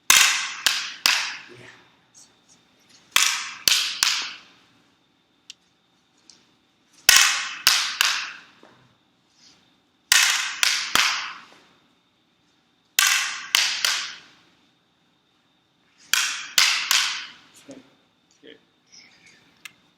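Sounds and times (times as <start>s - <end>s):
sticks striking training targets: 0.0s - 1.6s, 3.1s - 4.6s, 7.0s - 8.8s, 10.1s - 11.7s, 13.0s - 14.4s, 16.0s - 17.5s.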